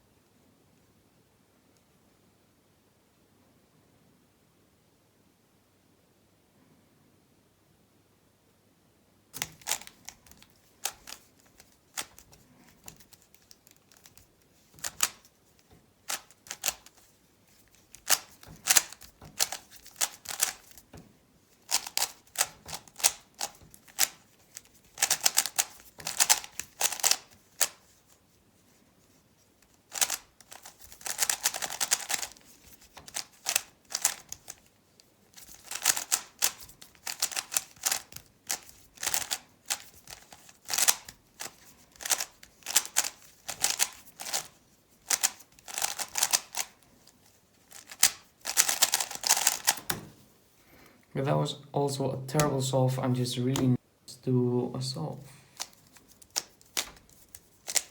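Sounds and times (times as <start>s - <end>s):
puzzle cube clicking: 9.4s - 28.0s, 29.6s - 47.1s, 47.7s - 50.2s, 55.5s - 57.9s.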